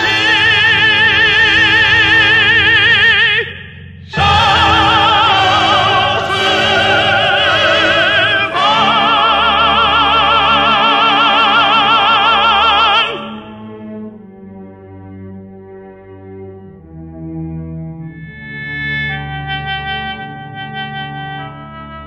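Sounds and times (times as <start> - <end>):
operatic solo voice singing: 0.0 - 13.8
sustained accompaniment: 0.0 - 22.0.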